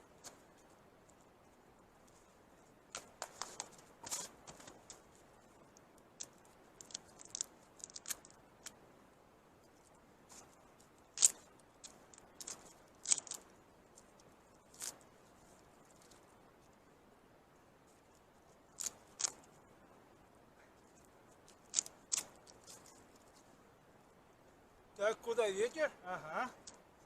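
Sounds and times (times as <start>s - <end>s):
sticks and snow cracking: 6.2s - 8.8s, 10.3s - 14.1s, 21.0s - 23.4s.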